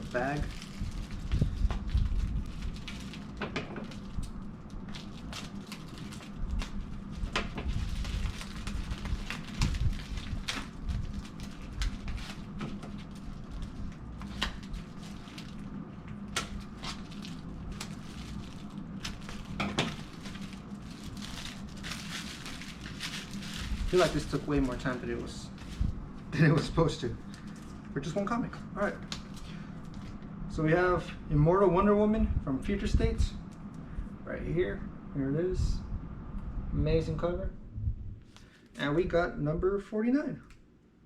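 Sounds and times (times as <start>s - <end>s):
plastic and cardboard rustling: 0.0s - 27.8s.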